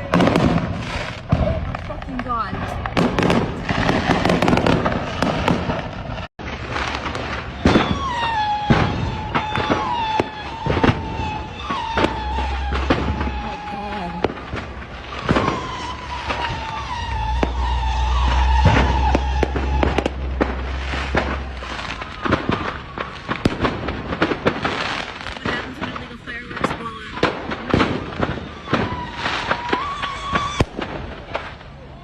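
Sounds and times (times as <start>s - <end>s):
fireworks banging and crackling: 0.0s - 32.0s
high held tone dipping in pitch: 15.6s - 21.8s.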